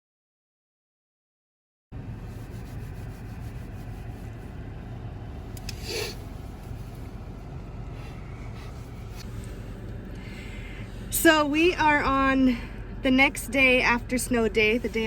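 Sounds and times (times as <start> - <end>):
car engine idling: 2.0 - 15.0.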